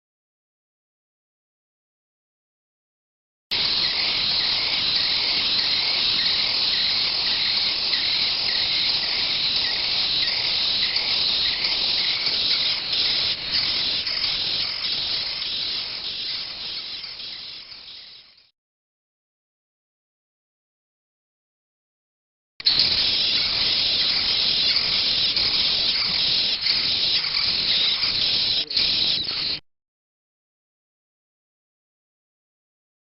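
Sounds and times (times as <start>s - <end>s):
nestlings calling in chorus: 3.5s - 18.5s, 22.6s - 29.6s.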